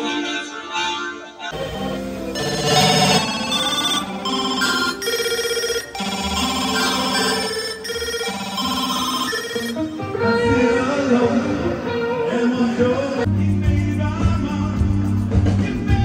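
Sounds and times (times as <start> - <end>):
synthesizer keyboard chords: 0.0 - 12.3
live rock band music: 9.7 - 16.0.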